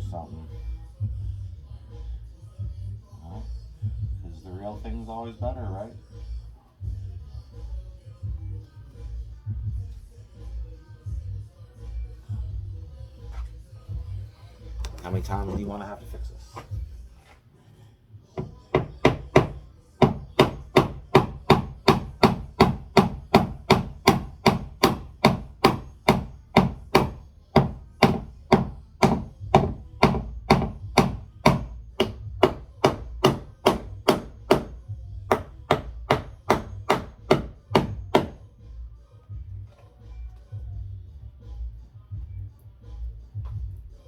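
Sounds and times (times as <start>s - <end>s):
hammer knocking wooden dowel: 18.4s - 38.4s.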